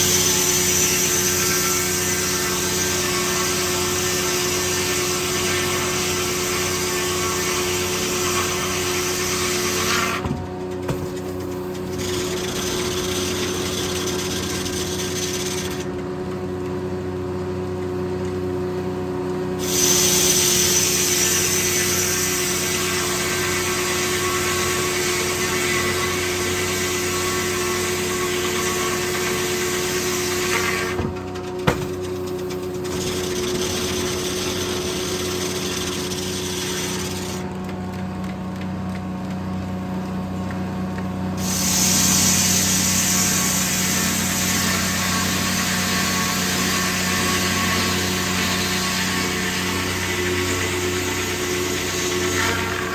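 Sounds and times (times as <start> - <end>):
sawmill humming: 0.0 - 52.9
saw blade hissing through logs: 19.6 - 22.3, 41.4 - 52.9
sharp knocks: 31.0 - 32.0.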